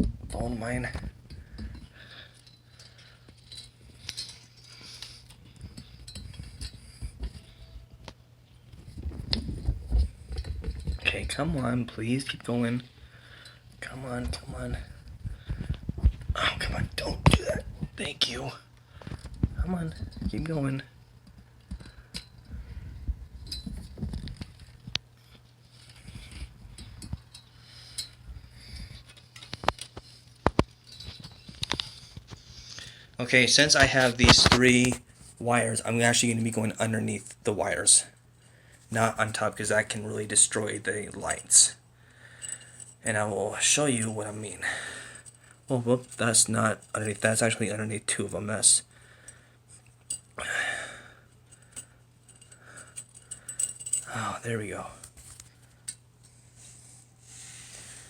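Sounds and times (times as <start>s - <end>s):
faint low hum: 0.0s - 58.0s
handling clicks and rustling: 19.0s - 32.5s, 33.5s - 35.2s, 51.4s - 56.3s.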